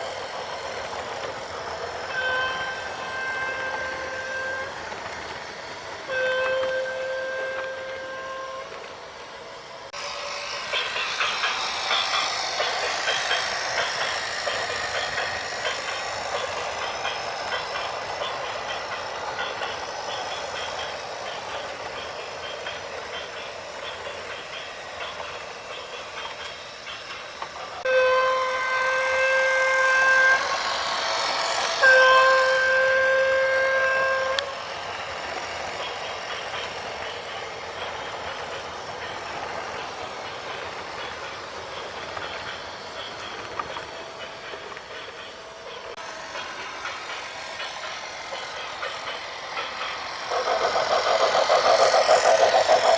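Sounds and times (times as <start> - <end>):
horn blasts: 2.0 - 4.9, 6.1 - 8.8, 27.9 - 30.9, 31.8 - 34.6.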